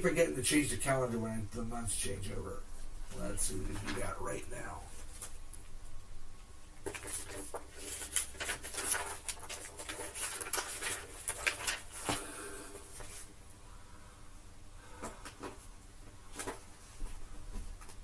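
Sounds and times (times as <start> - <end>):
paper rustling: 6.8 - 13.3.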